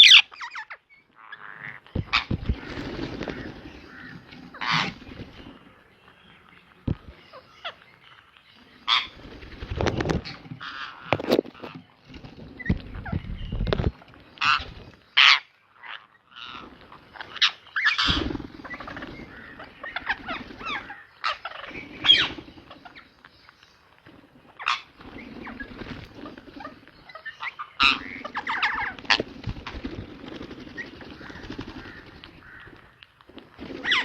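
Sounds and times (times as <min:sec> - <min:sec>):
parrot squawking: 0:00.0 - 0:02.2.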